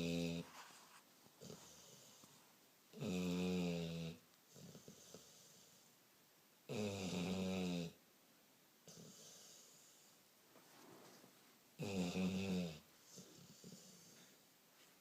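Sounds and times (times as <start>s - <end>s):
loud snoring: 3.0s - 5.7s, 6.7s - 8.0s, 11.8s - 14.2s
faint breathing: 13.0s - 14.4s.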